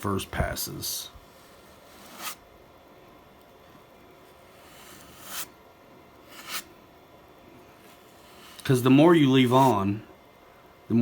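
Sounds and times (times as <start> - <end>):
plastic card scraping foam: 1.3 - 2.4, 4.5 - 5.5, 6.3 - 6.7, 7.9 - 8.8.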